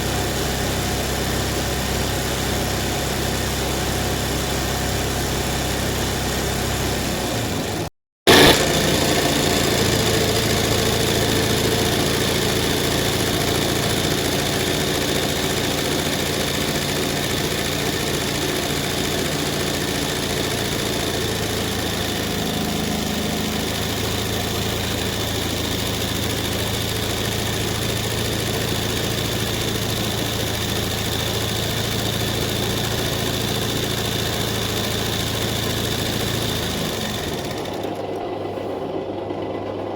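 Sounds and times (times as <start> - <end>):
embroidery machine humming: 8.3 - 39.9.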